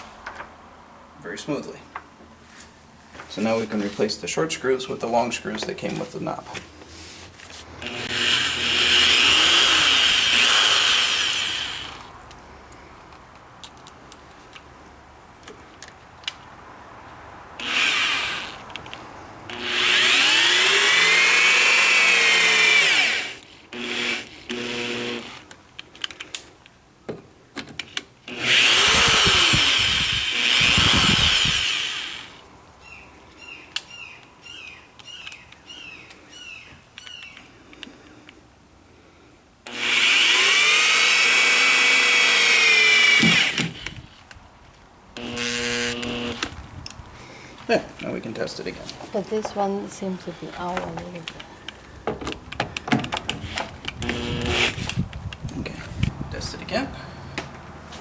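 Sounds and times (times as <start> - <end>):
cordless drill driving screws: 7.8 - 12.1, 17.6 - 25.5, 28.3 - 32.4, 39.7 - 44.0, 45.2 - 46.5, 52.6 - 55.0.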